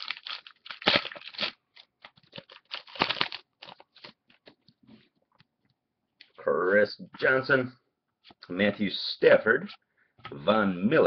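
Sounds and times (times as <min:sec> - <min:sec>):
cards scraping and crinkling: 0:00.0 - 0:04.7
trading cards rustling and clicking: 0:00.0 - 0:04.8.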